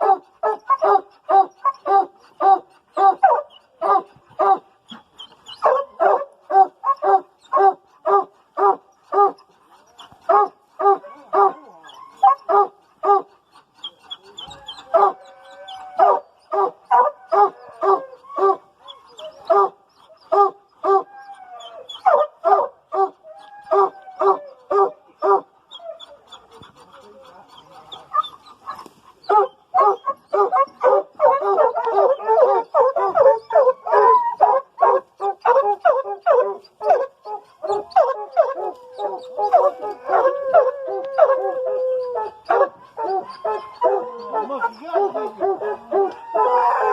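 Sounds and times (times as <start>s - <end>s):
hounds barking: 0.0s - 46.9s
dog howling: 14.5s - 19.7s, 20.3s - 26.2s, 29.4s - 46.9s.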